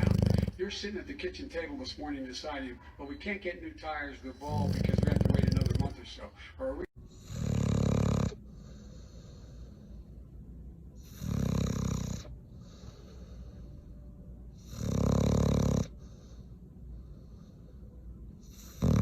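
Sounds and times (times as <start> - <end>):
animal snoring: 0.0 - 0.6, 4.4 - 6.0, 7.1 - 9.7, 11.0 - 13.4, 14.6 - 16.4, 18.4 - 19.0
quiet breathing: 4.2 - 7.5, 8.3 - 19.0.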